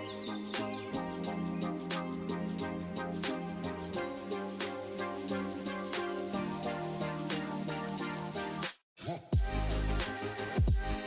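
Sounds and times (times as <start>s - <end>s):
steady beat: 9.4s - 11.0s.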